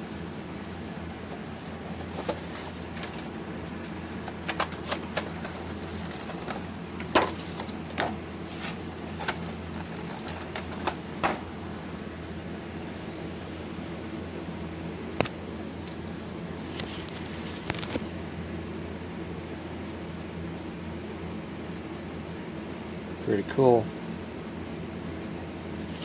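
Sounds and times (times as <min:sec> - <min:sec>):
air-conditioning hum: 0:00.0 - 0:26.0
packaging clicks and taps: 0:03.0 - 0:08.2.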